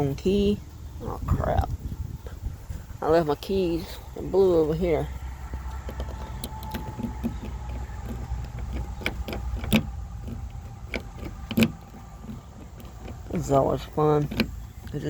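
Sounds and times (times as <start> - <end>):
low steady rumble: 0.0 - 15.0
car door latch knocks: 5.6 - 13.4
keys jingling and clicking: 5.6 - 15.0.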